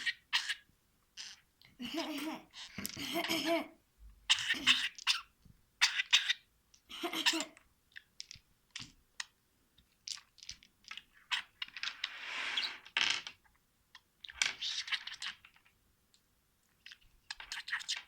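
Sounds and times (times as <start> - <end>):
budgerigar chirps and clicks: 0.0 - 0.6, 4.3 - 6.5.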